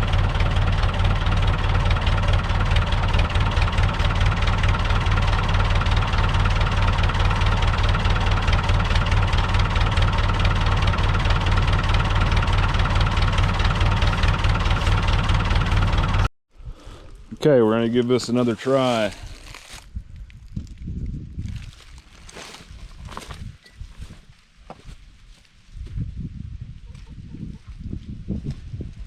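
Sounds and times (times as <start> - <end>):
tractor diesel engine idling: 0.0 - 16.3.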